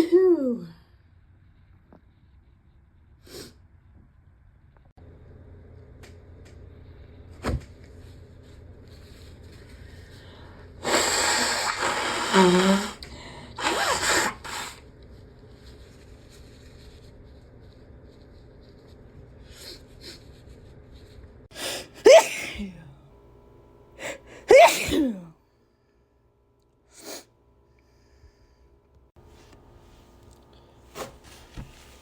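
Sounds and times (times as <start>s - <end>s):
noisy breath: 9.0s - 14.8s, 26.9s - 28.8s
person sneezing: 13.6s - 14.8s, 21.6s - 22.9s, 24.0s - 25.3s.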